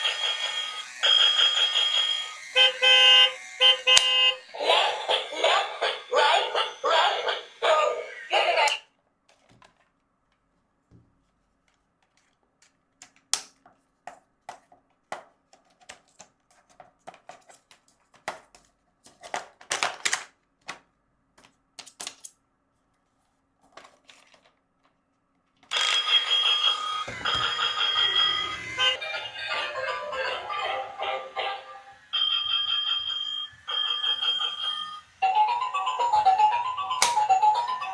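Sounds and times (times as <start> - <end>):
electronic toy music: 0.0 - 8.8, 25.7 - 37.9
plastic toy parts clicking: 14.5 - 20.8, 21.4 - 22.4, 37.0 - 37.3.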